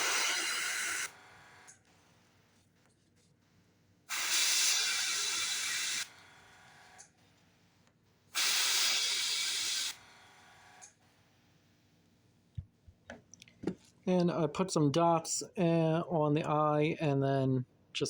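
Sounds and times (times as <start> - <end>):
airbrush spraying hiss: 0.0 - 1.2, 4.1 - 6.3, 8.4 - 10.2.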